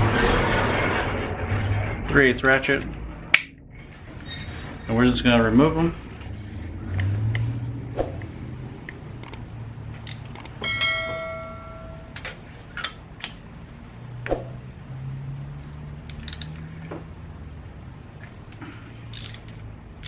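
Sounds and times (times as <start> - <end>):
ratchet clicking: 10.0 - 10.6, 16.2 - 16.6, 19.0 - 19.6
metal clicks and knocks: 10.1 - 10.6
ringing metallic clang: 10.6 - 12.4.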